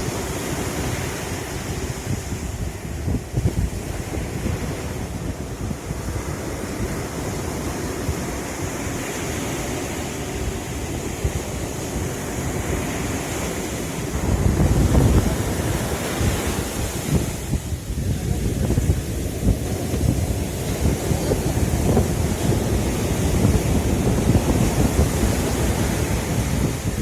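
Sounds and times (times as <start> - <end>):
sea waves washing on shore: 0.0 - 27.0
wind buffeting microphone: 0.0 - 27.0.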